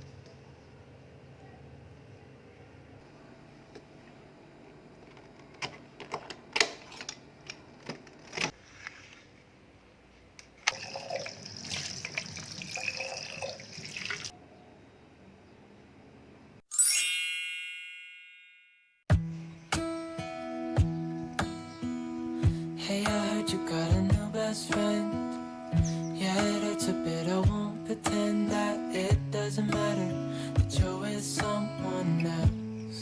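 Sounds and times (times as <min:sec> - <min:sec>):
water running: 0:10.7 - 0:14.4
bright ding: 0:16.7 - 0:18.9.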